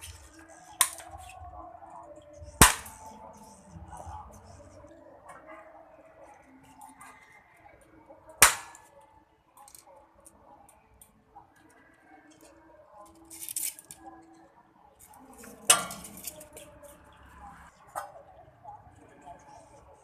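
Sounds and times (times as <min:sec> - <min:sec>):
toy shotgun cracks: 0:08.4 - 0:08.9.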